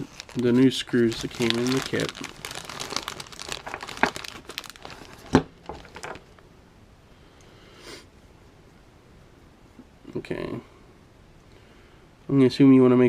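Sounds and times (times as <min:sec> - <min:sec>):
plastic packaging crinkling: 0:00.0 - 0:06.4.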